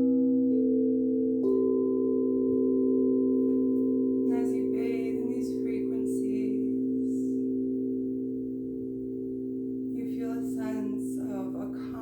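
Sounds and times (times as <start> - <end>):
singing bowls chord: 0.0 - 12.0
person speaking softly: 4.3 - 7.6, 10.0 - 12.0.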